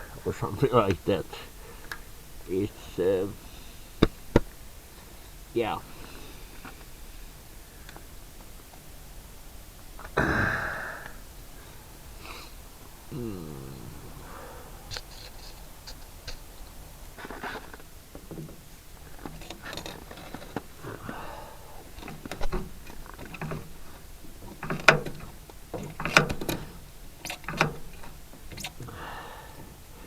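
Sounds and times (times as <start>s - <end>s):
tools clicking and scraping: 17.2s - 20.7s, 21.9s - 28.9s.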